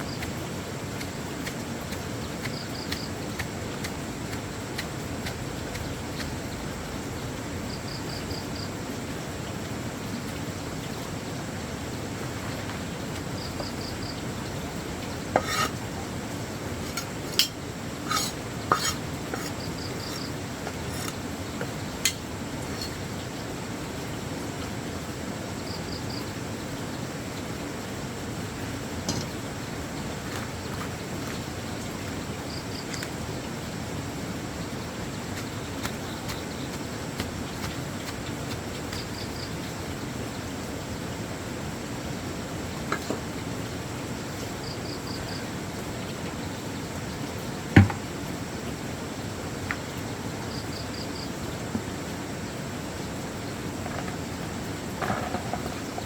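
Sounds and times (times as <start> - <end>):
sizzle-like hiss: 10.2 - 24.2
utensils clinking: 16.8 - 23.0.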